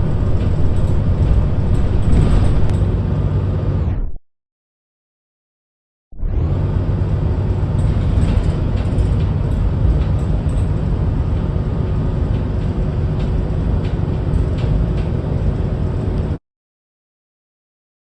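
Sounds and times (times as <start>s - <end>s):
vehicle rumble: 0.0s - 4.2s, 6.2s - 16.4s.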